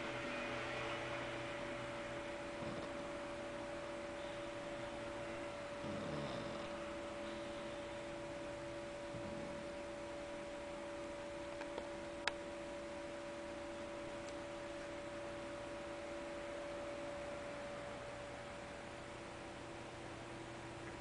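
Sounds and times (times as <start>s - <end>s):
two-note electrical hum: 0.0s - 21.0s
cat snoring softly: 2.4s - 3.4s, 5.7s - 7.8s, 8.8s - 10.2s.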